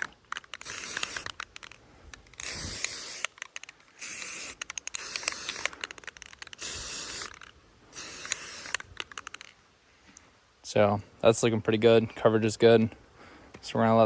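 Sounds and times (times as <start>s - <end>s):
small sharp clicks: 0.0s - 7.6s, 8.2s - 10.3s
spray can hissing: 0.5s - 1.5s, 2.4s - 9.4s.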